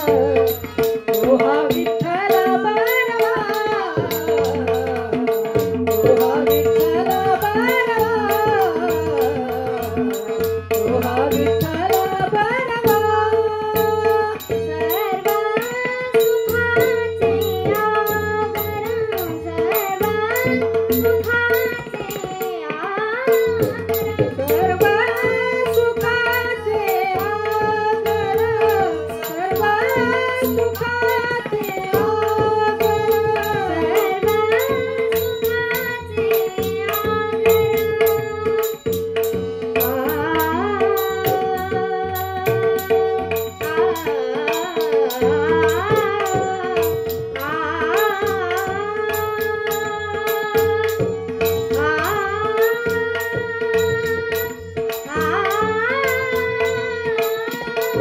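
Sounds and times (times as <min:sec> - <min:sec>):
person singing: 0:00.0 - 0:00.6
tabla rhythm: 0:00.0 - 0:58.0.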